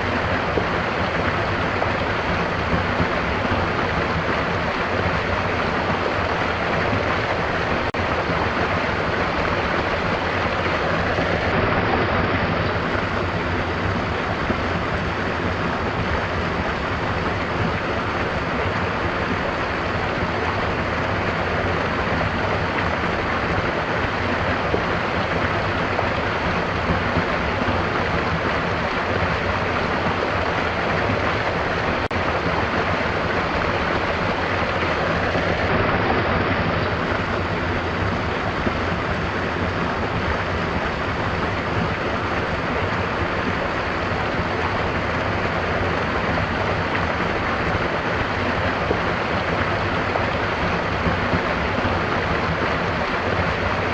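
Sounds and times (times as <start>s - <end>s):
stream water flowing: 0.0s - 53.9s.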